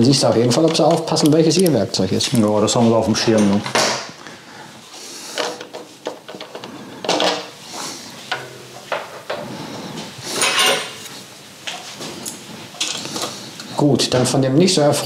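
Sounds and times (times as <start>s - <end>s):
hand tools and metal parts clinking: 10.2s - 11.2s, 12.2s - 13.7s.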